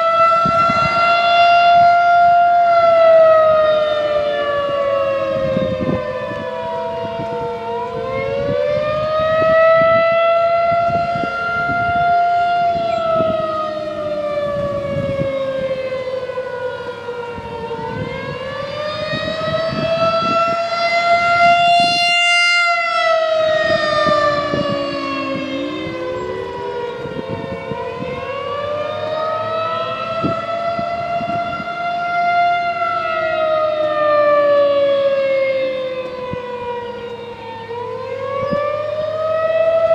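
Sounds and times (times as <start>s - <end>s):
warning siren wailing: 0.0s - 39.9s.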